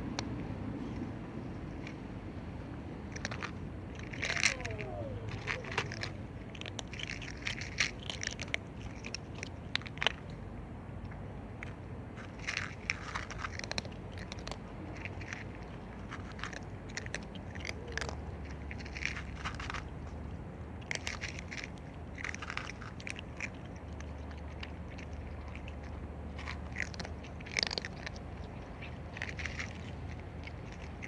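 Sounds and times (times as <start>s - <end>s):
cat chewing and crunching food: 0.0s - 31.0s.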